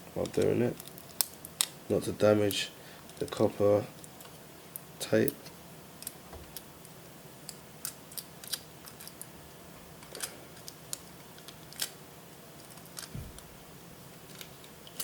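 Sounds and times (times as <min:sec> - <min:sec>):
tape peeling clicks and crackles: 0:00.2 - 0:01.8, 0:07.5 - 0:09.3, 0:10.0 - 0:12.0, 0:12.6 - 0:13.5, 0:14.2 - 0:15.0.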